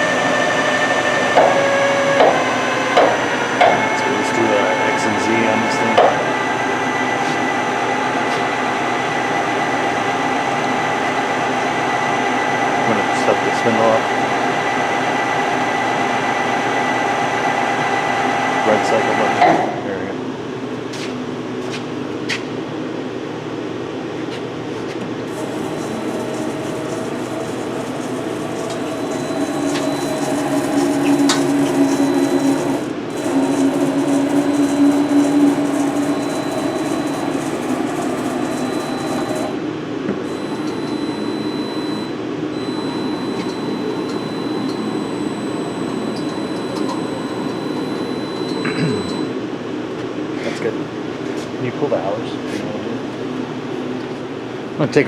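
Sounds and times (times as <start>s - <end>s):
higher machine tone: 0.0s - 10.6s, 25.3s - 49.5s
lathe spindle humming and whining: 0.0s - 19.8s, 25.2s - 49.4s.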